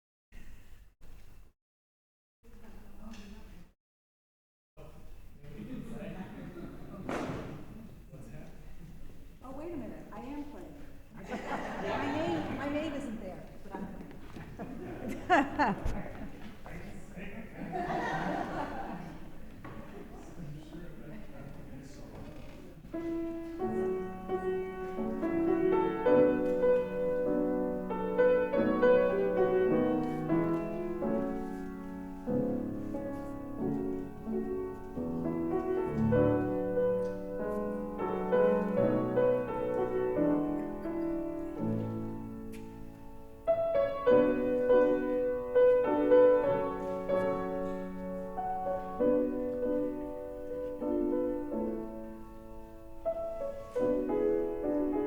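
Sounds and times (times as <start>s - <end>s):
classical piano piece: 9.6s - 55.0s.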